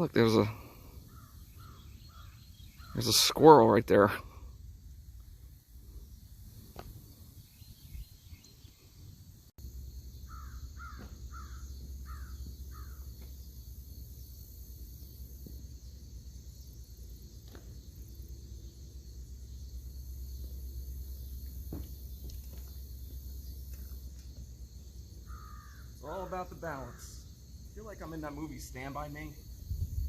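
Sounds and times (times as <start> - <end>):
crow cawing: 1.1 - 3.0, 10.3 - 13.1, 25.2 - 27.2.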